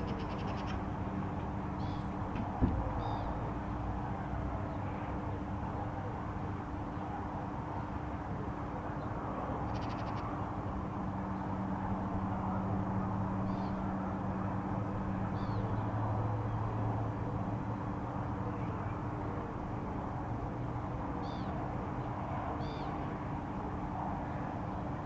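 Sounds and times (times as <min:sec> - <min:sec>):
low droning hum from the sky: 0:00.0 - 0:25.0.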